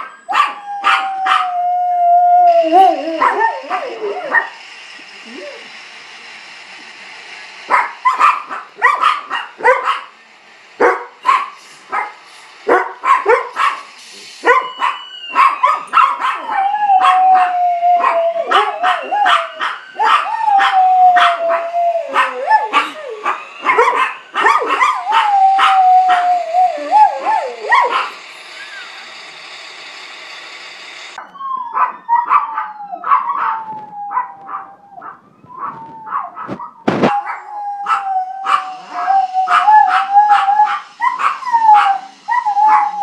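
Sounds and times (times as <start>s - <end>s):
dog howling: 0.0s - 4.6s, 14.4s - 29.1s, 31.7s - 43.0s
dog barking: 7.7s - 10.1s, 10.8s - 13.8s, 14.4s - 16.6s, 31.8s - 33.6s.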